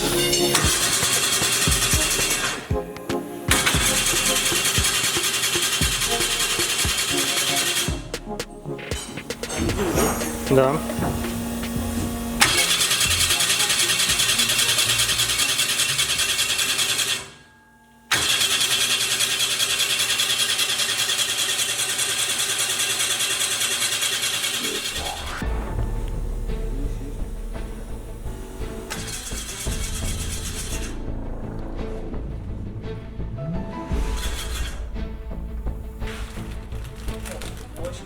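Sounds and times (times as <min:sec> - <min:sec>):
motor running with fast pulse: 0:00.0 - 0:02.9, 0:03.5 - 0:08.0, 0:09.0 - 0:17.3, 0:18.2 - 0:31.6
background music with a beat: 0:00.0 - 0:15.4.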